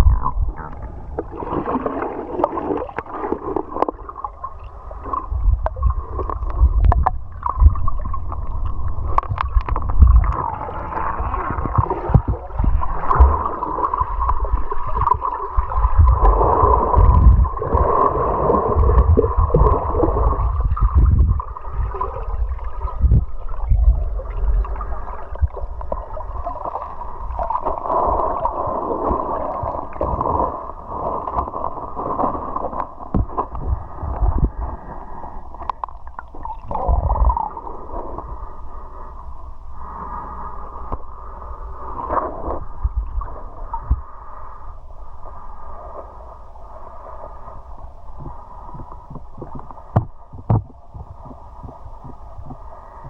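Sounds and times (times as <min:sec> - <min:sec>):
river water rushing underwater: 0:00.0 - 0:53.0
low underwater thuds and knocks: 0:05.5 - 0:08.4, 0:18.7 - 0:26.2, 0:33.1 - 0:34.6, 0:48.2 - 0:52.7.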